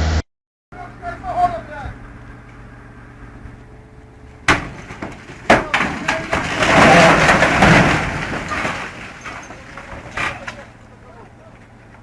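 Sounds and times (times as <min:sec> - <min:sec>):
noisy crashing: 0:04.4 - 0:10.8.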